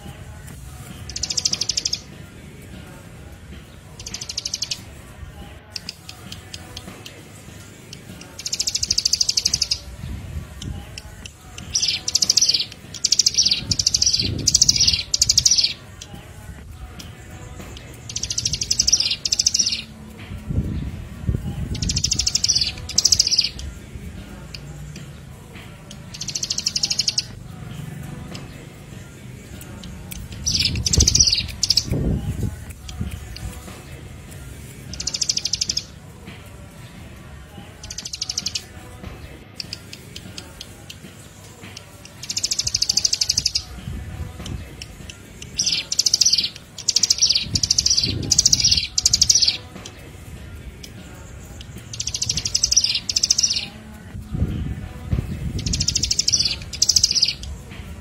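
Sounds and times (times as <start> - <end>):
songbird trilling: 1.0 - 2.1, 3.7 - 4.9, 5.7 - 9.9, 10.6 - 16.1, 17.0 - 20.0, 21.7 - 25.0, 25.9 - 27.5, 29.4 - 33.7, 34.9 - 36.0, 37.7 - 38.8, 39.6 - 43.8, 44.8 - 50.0, 50.8 - 53.8, 55.6 - 57.7.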